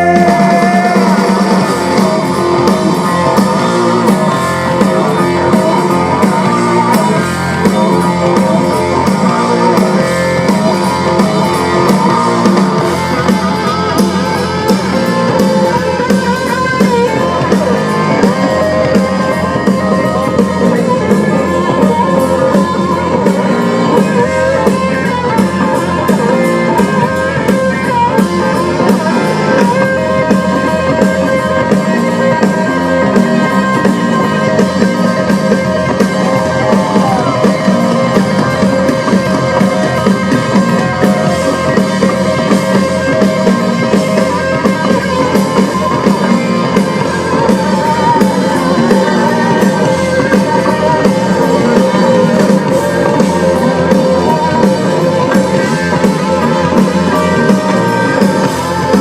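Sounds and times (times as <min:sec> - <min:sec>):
bass guitar: 0:00.0 - 0:59.0
drum kit: 0:00.0 - 0:59.0
electric guitar: 0:00.0 - 0:59.0.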